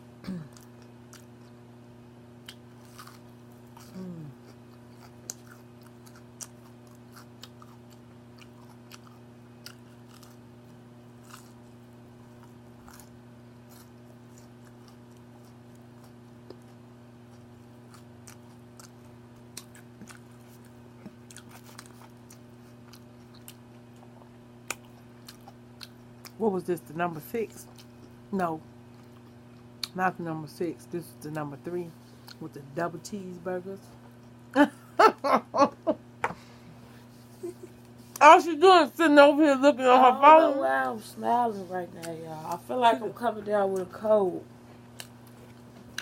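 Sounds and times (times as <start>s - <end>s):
steady low hum: 0.0s - 46.0s
chewing and crunching food: 0.4s - 1.6s, 2.4s - 30.0s, 31.2s - 32.5s, 41.8s - 46.0s.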